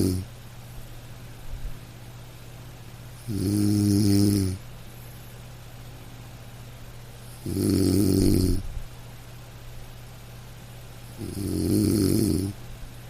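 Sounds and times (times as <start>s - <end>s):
loud snoring: 0.0s - 0.2s, 3.2s - 4.6s, 7.3s - 8.6s, 11.2s - 12.6s
steady low hum: 0.0s - 13.0s.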